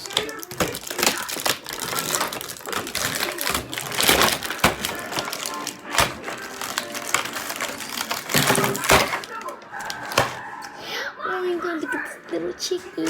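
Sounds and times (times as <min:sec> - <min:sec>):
packaging crinkling as torn open: 0:00.0 - 0:10.4
background music: 0:00.0 - 0:13.0.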